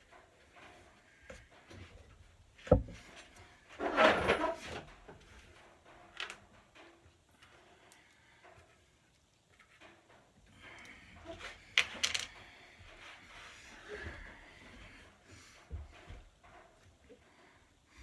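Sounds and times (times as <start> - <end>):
scraping or rustling: 2.8 - 5.0.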